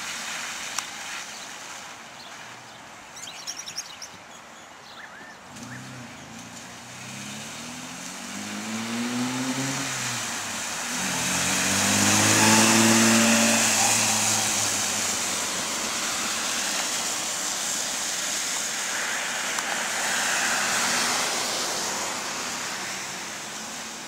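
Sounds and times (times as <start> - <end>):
car engine accelerating: 5.5 - 17.2.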